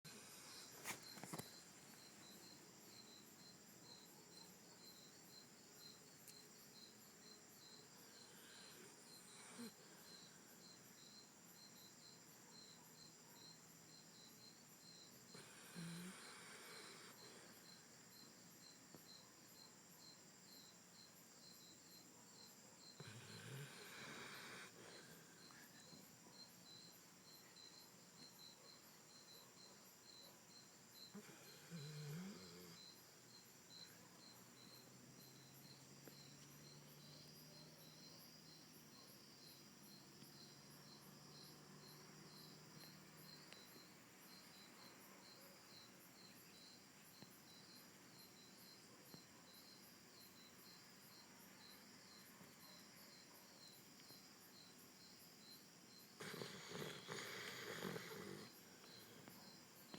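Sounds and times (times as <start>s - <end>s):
dog snoring faintly: 8.1s - 11.7s, 15.3s - 17.8s, 22.8s - 26.9s, 30.5s - 38.0s, 56.1s - 59.6s.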